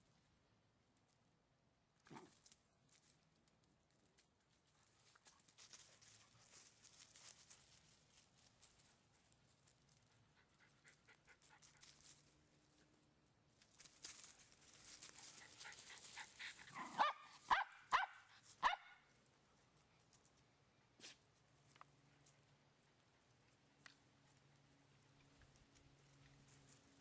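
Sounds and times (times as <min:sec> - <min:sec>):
rustling: 0:02.1 - 0:10.2, 0:11.4 - 0:17.1
dog barking: 0:16.7 - 0:19.0.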